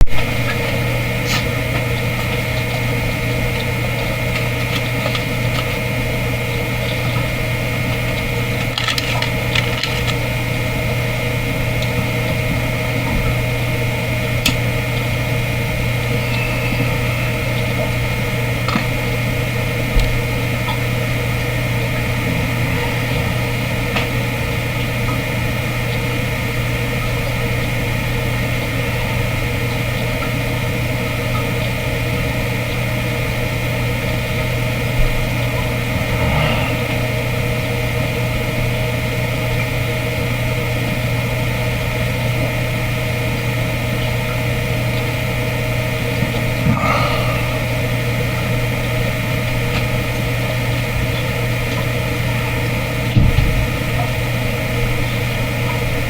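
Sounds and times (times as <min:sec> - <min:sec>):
steady mechanical hum: 0:00.0 - 0:56.0
constant high tone: 0:15.2 - 0:19.7.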